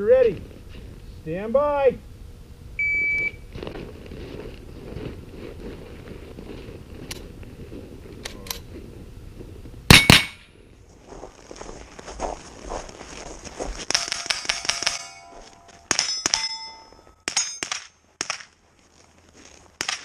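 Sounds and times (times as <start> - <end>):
shot timer beep: 2.8 - 3.4
rifle shots: 9.9 - 10.4, 19.8 - 20.0.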